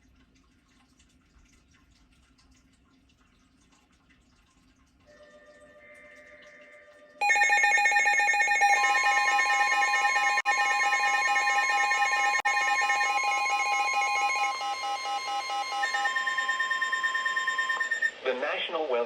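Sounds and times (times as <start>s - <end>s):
warbling electronic alarm beeps: 7.2s - 18.3s
steady warning tone: 7.2s - 18.9s.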